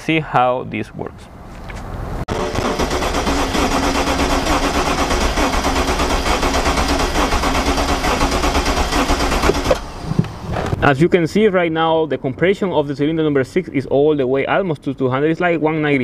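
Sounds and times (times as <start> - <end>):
engine cranking on starter: 2.3 - 10.2.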